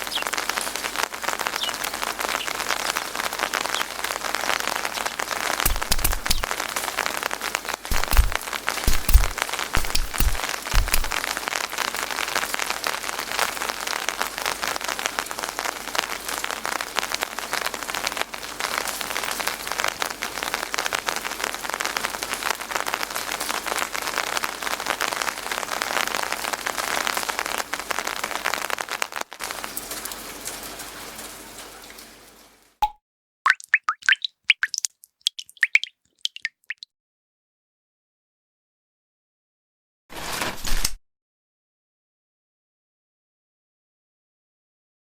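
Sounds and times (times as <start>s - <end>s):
steady rain falling: 0.0s - 32.8s.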